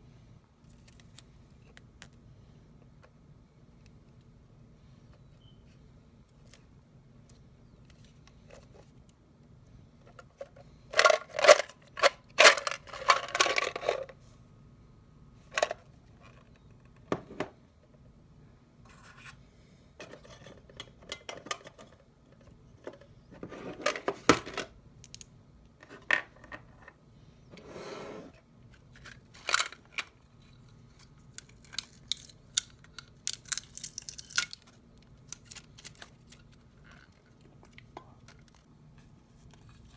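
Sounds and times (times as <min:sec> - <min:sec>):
candy wrapper crinkling and tearing: 0:31.1 - 0:37.8.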